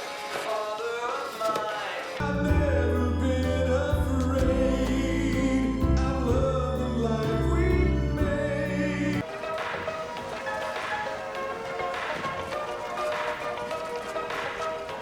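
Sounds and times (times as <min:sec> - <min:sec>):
choir singing: 0:00.0 - 0:09.6
deep bass notes: 0:02.2 - 0:09.2.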